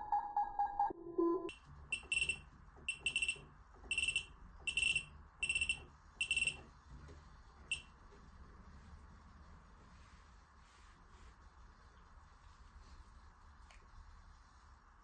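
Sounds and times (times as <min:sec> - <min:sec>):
high-pitched alarm beeps: 0:00.0 - 0:06.6, 0:07.7 - 0:07.9.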